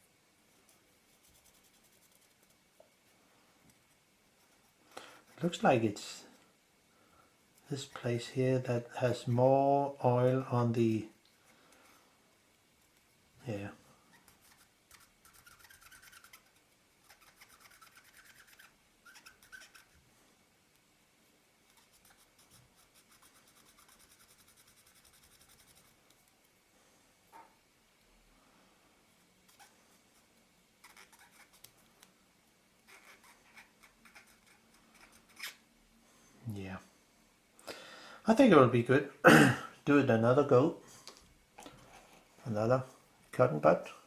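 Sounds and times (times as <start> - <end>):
cotton bud scratchy rubbing: 0.6 - 3.2, 14.1 - 20.0, 21.7 - 26.0, 29.4 - 31.8, 32.9 - 35.6.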